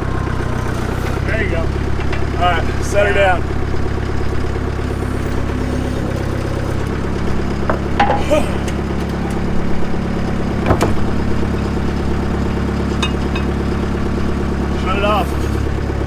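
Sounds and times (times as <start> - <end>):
loader engine idling: 0.0 - 16.0
metallic knocks: 0.8 - 2.4, 7.6 - 9.7, 10.5 - 11.7, 12.8 - 13.8.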